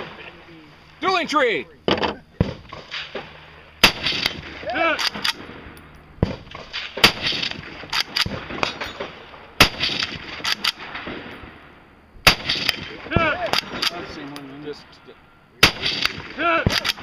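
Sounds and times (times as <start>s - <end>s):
rifle shots: 2.4s - 14.3s, 15.6s - 17.0s.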